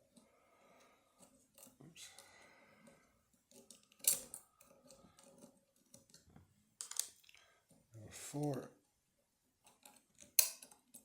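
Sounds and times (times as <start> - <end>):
lock parts clicking and clinking: 2.8 - 7.3, 9.6 - 11.0.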